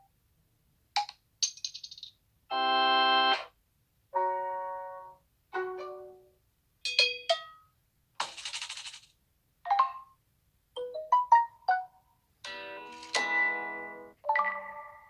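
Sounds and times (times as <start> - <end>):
short rattly noise: 8.2 - 9.2.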